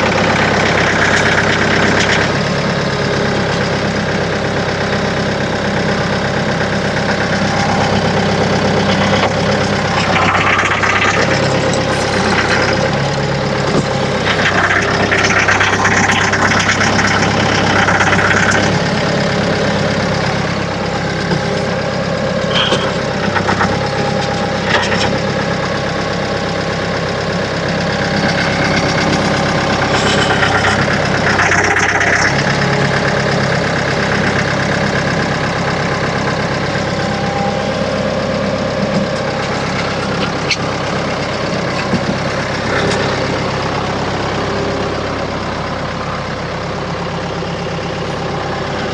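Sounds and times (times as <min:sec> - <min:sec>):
heavy equipment engine running: 0:00.0 - 0:48.9.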